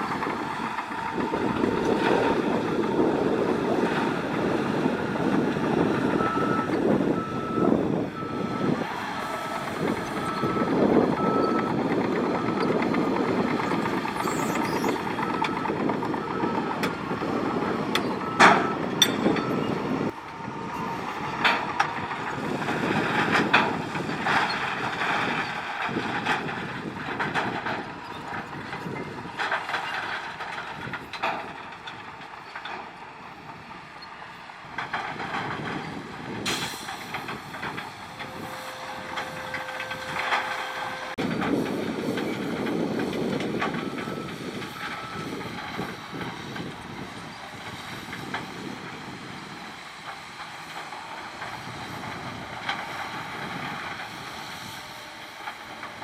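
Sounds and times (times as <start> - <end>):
diesel engine under load: 0.0 - 56.0
metallic clanks from tracks: 17.9 - 19.7, 34.8 - 46.7.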